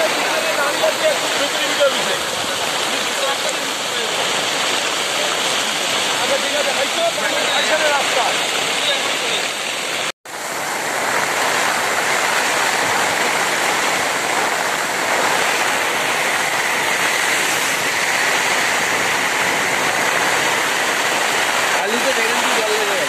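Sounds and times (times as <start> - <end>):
heavy rain pouring: 0.0 - 23.0.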